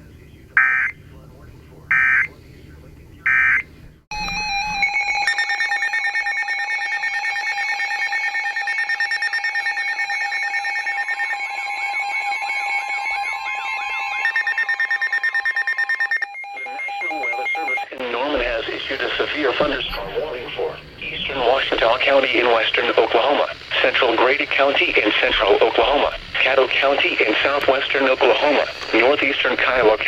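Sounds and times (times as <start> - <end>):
pulsing electronic alarm tones: 3.3 - 30.0
short data burst: 17.8 - 30.0.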